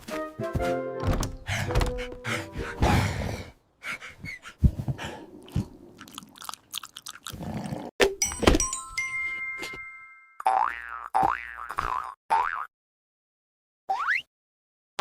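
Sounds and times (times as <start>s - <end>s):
cartoon knocks and thuds: 1.0s - 2.2s.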